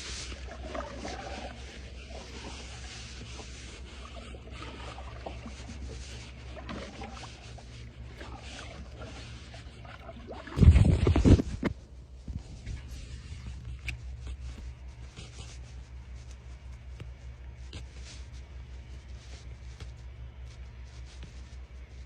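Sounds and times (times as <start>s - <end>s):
steady low hum: 0.0s - 22.0s
fishing gear knocking and rubbing: 0.3s - 15.0s.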